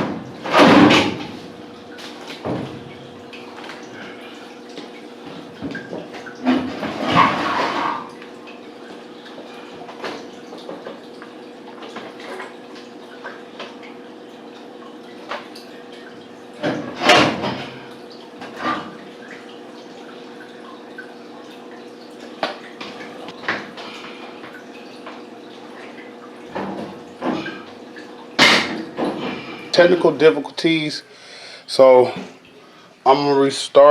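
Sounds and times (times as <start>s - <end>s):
washing machine humming: 0.0s - 33.9s
water dripping: 1.4s - 6.5s, 8.0s - 16.8s, 17.7s - 30.7s.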